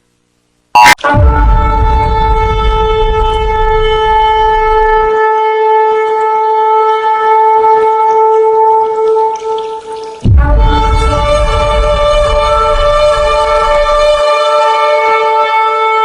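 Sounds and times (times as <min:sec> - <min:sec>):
long horn blast: 0:00.8 - 0:09.4, 0:10.2 - 0:16.0
deep rumble: 0:01.2 - 0:05.2, 0:10.3 - 0:14.2.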